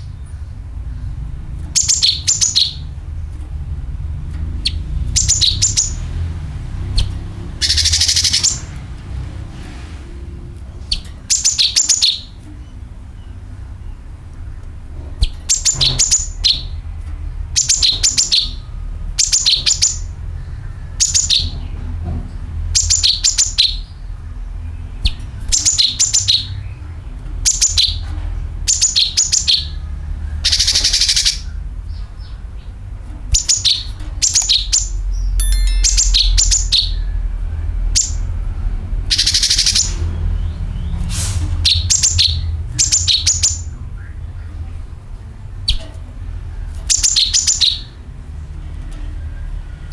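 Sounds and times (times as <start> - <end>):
steady low rumble: 0.0 - 49.9
bird sharp high chirps: 1.7 - 2.9, 4.6 - 6.1, 7.0 - 8.8, 10.9 - 14.0, 15.2 - 16.8, 17.6 - 21.7, 22.7 - 24.0, 24.9 - 26.8, 27.4 - 28.1, 28.7 - 32.7, 33.3 - 37.2, 37.9 - 38.3, 39.1 - 41.0, 41.6 - 44.6, 46.8 - 48.0.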